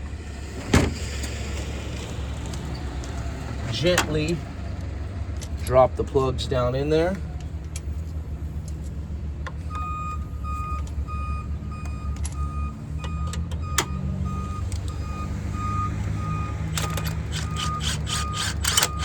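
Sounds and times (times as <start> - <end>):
electronic warning beeps: 9.7 - 16.7, 17.4 - 19.0.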